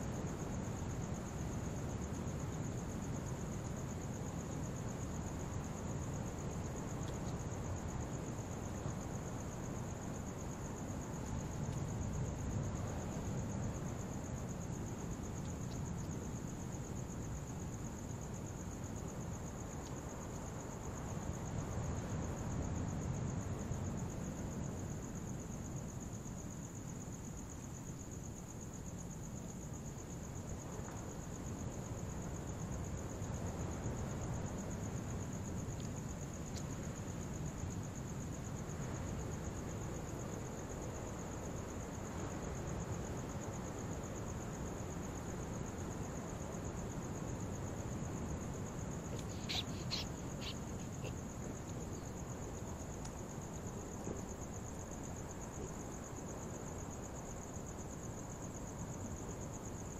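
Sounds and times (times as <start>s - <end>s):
crickets trilling: 0.0s - 59.9s
faint ticks: 6.9s - 7.5s, 11.2s - 11.9s, 15.3s - 16.2s, 19.8s - 20.1s, 35.7s - 36.8s, 49.1s - 52.1s, 53.0s - 54.2s.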